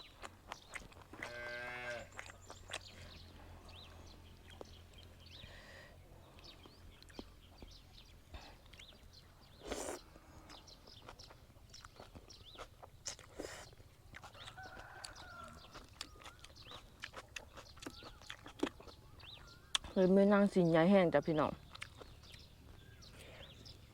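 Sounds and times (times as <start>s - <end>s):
small birds chirping: 0.0s - 23.9s
chewing clicks: 0.1s - 1.4s, 2.1s - 3.0s, 6.3s - 7.8s, 10.4s - 20.0s, 21.6s - 22.8s
cow mooing: 1.2s - 2.1s.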